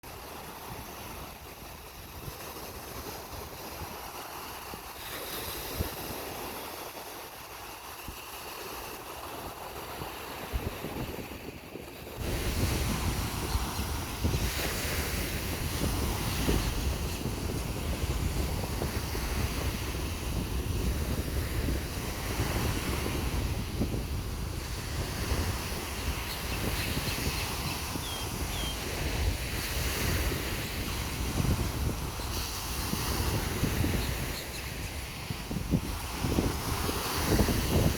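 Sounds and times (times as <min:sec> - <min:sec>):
ocean surf washing onto beach: 0:00.1 - 0:37.9
wind buffeting microphone: 0:00.1 - 0:37.9.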